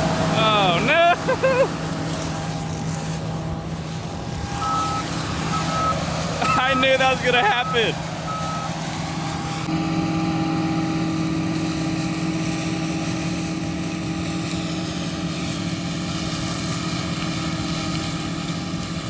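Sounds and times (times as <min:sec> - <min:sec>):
thin whine: 0:00.0 - 0:11.4
heavy machinery engine running: 0:00.0 - 0:19.0
reversing beeper: 0:04.4 - 0:09.4.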